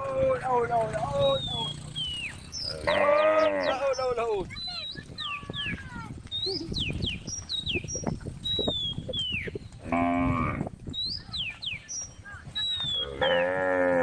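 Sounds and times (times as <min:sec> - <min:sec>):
cow mooing: 0:02.7 - 0:03.9, 0:09.8 - 0:10.6, 0:13.1 - 0:14.0.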